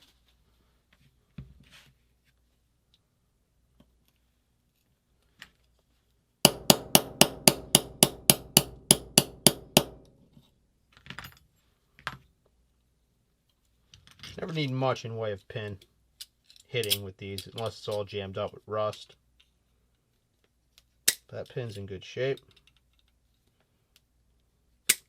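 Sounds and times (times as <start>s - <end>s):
hammer tapping metal punch: 6.5s - 10.1s.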